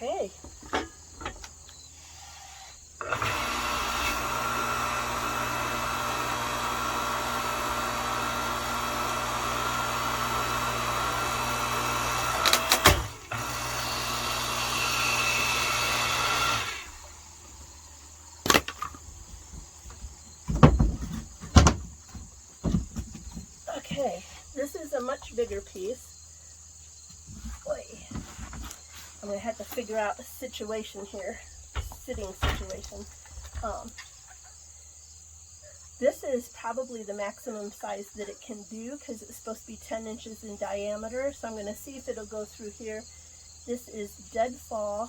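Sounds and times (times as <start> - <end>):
wood cracking: 3.0 - 17.2, 18.4 - 23.4
log splitter motor running: 3.0 - 17.8
wood knocking: 18.4 - 24.0.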